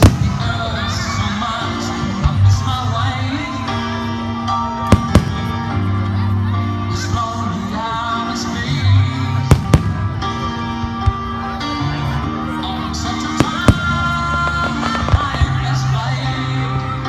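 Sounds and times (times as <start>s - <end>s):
fireworks bangs: 0.0s - 1.4s, 4.9s - 5.6s, 13.4s - 15.6s
music playing: 0.0s - 17.0s.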